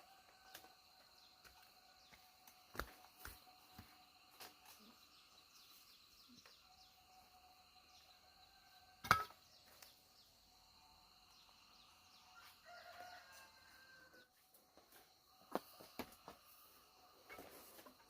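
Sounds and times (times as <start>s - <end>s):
rooster crowing: 0.0s - 1.1s, 12.4s - 14.3s.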